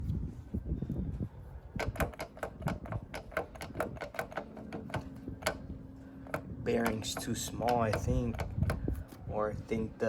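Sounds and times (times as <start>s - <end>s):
wheel bearing clicking: 1.8s - 9.2s.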